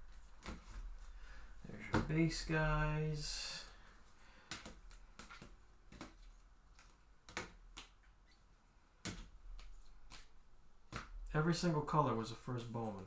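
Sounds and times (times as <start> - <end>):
cards tapping and clicking: 4.4 - 8.1, 9.0 - 11.2.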